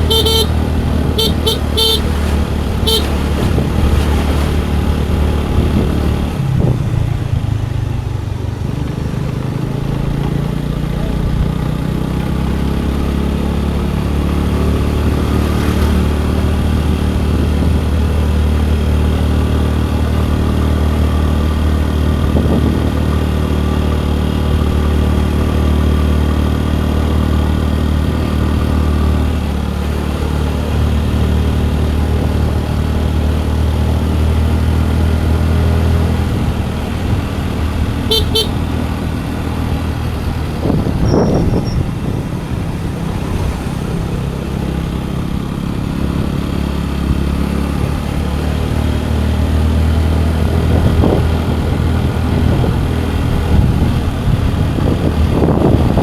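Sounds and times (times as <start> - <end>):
vehicle horn toots: 0.0 - 3.6, 38.0 - 38.8
scooter engine humming: 0.0 - 56.0.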